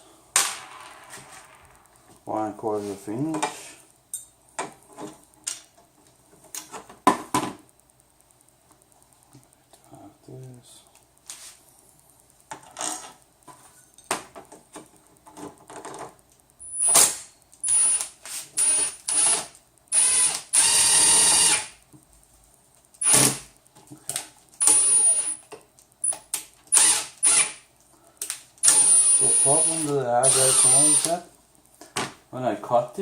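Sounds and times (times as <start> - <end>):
power screwdriver driving screws: 16.8 - 21.7, 24.6 - 25.4, 26.7 - 27.6, 28.6 - 31.2.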